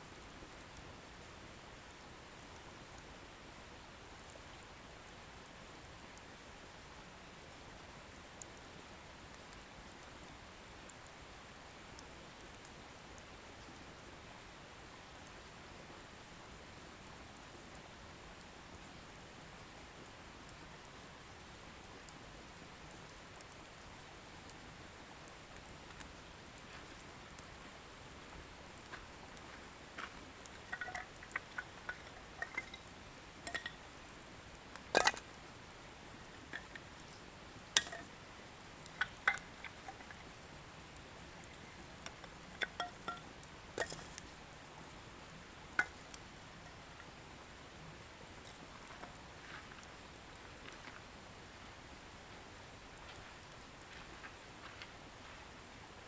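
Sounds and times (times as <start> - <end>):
faint steady hiss: 0.0 - 56.0
bonfire crackling and popping: 19.9 - 51.9.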